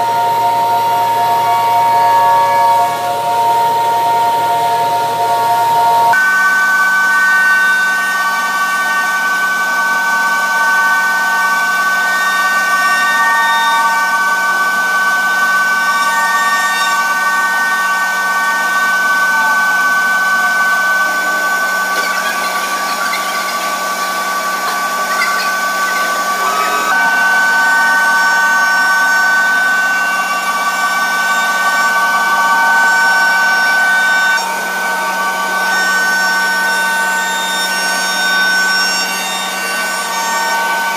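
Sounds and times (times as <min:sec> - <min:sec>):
router spindle high whine: 0:00.0 - 0:40.9
bit cutting into wood: 0:12.1 - 0:30.2.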